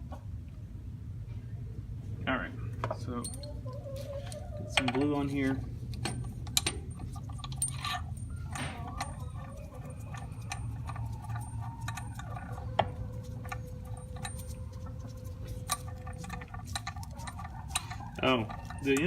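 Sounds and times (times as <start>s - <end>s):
steady low hum: 0.0s - 19.0s
metal tools clinking: 3.2s - 3.6s, 4.7s - 14.9s, 15.5s - 19.0s.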